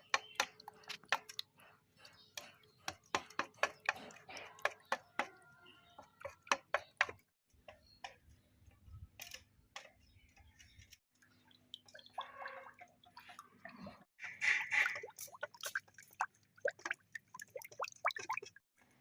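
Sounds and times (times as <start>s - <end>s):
water dripping: 11.2s - 18.6s.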